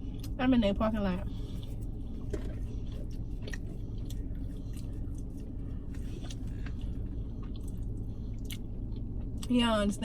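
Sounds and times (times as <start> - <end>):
steady low hum: 0.0 - 10.0
chewing mouth sounds: 1.5 - 9.4.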